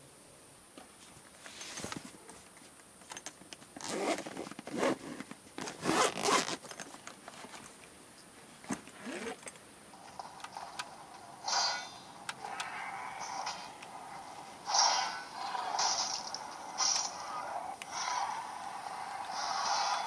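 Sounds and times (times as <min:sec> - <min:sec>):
zipper pulled: 0:03.8 - 0:06.7, 0:09.0 - 0:09.4.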